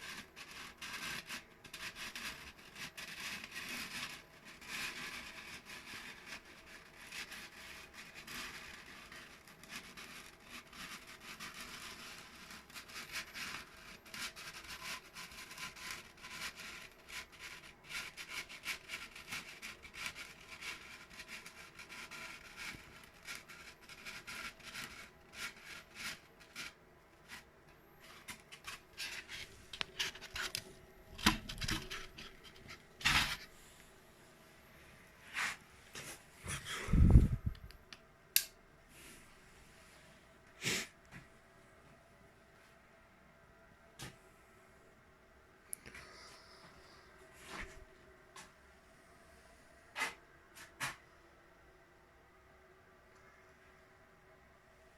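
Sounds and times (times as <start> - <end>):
foam rubbing and scratching: 0.0 - 33.8, 35.2 - 37.7.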